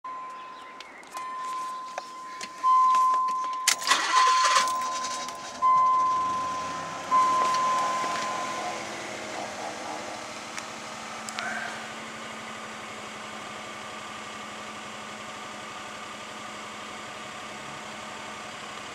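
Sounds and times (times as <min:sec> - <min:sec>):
dashboard warning chime beeping: 0:00.1 - 0:10.3
car engine idling: 0:00.1 - 0:18.9
starter cranking engine: 0:03.6 - 0:12.0.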